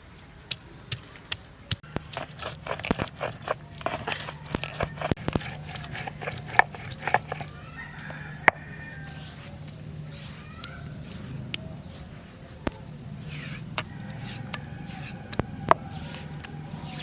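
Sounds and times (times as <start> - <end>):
knife chopping food: 0.9 - 8.6.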